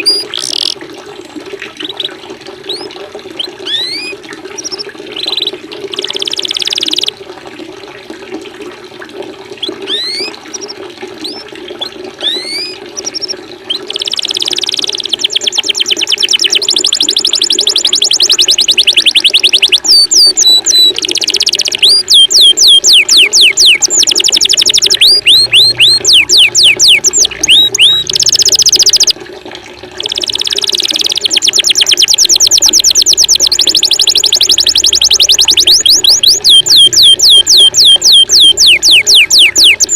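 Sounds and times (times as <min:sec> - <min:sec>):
running water: 0:00.0 - 0:39.9
songbird trills and whistles: 0:12.2 - 0:29.1, 0:30.0 - 0:39.9.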